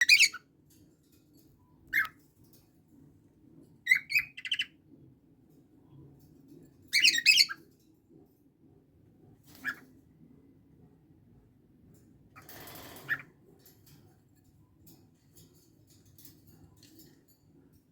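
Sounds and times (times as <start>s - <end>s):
parrots squawking and chirping: 0.0s - 0.4s, 1.9s - 2.1s, 3.9s - 4.7s, 6.9s - 7.6s, 9.5s - 9.9s, 12.4s - 13.3s.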